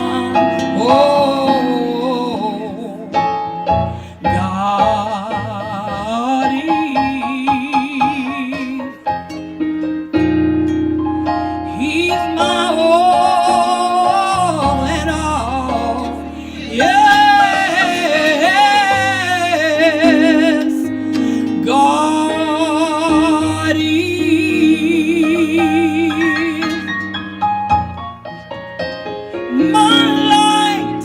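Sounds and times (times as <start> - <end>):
person singing gospel with vibrato: 0.0 - 9.0, 11.7 - 26.8, 29.5 - 31.0
keyboard and bass chords: 9.1 - 31.0.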